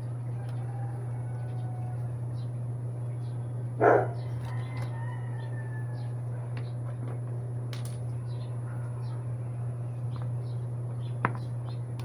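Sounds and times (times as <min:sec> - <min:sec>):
steady low hum: 0:00.0 - 0:12.0
dog barking: 0:03.8 - 0:04.2.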